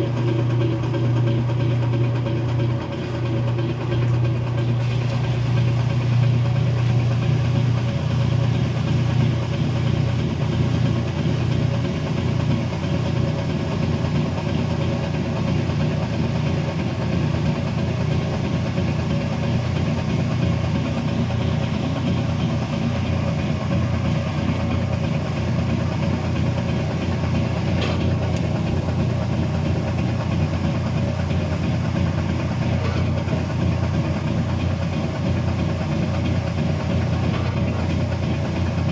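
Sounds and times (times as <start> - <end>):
washing machine motor hum: 0.0 - 38.9.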